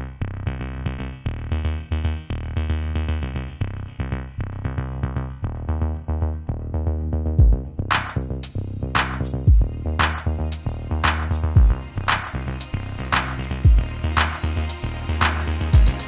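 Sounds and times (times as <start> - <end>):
electronic music with drum beat: 7.4 - 16.0.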